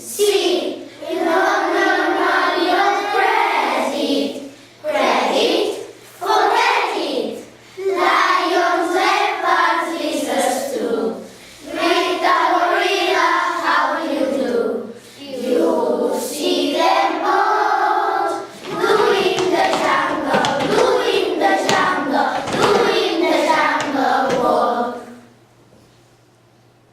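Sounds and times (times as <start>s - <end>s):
steady low hum: 0.0s - 26.9s
group of voices singing: 7.8s - 25.2s.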